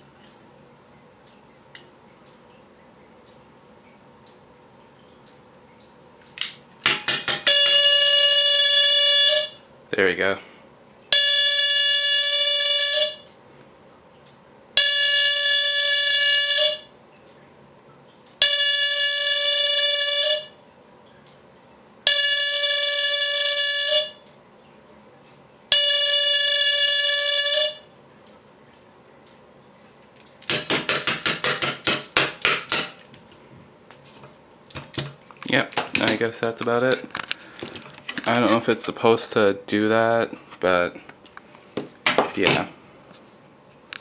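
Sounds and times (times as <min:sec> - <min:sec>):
smoke alarm buzzing horn: 0:07.4 - 0:09.7, 0:11.1 - 0:13.4, 0:14.8 - 0:17.0, 0:18.4 - 0:20.6, 0:22.0 - 0:24.2, 0:25.7 - 0:28.0.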